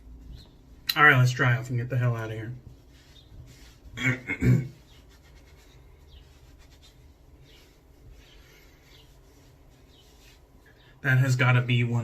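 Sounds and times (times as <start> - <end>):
towel rubbing face: 1.9 - 11.2.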